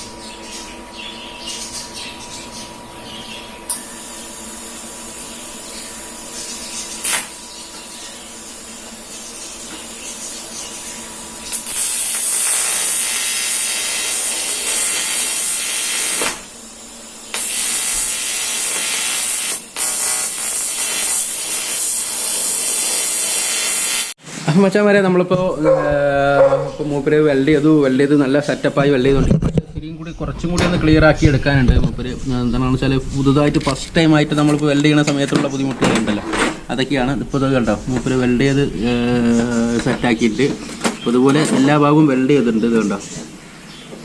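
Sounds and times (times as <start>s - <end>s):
even hum: 0.0s - 44.0s
welding arc hissing buzz: 2.6s - 24.2s.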